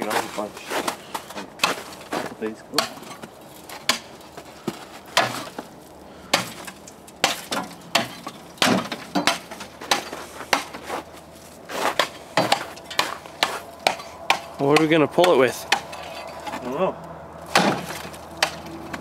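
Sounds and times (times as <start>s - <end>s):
shovel chopping ice: 6.3s - 11.0s, 11.7s - 15.9s, 17.5s - 18.7s.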